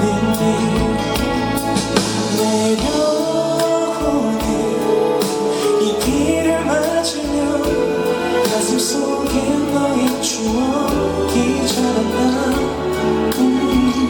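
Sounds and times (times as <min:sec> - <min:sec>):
band accompaniment: 0:00.0 - 0:14.0
person singing: 0:00.0 - 0:14.0.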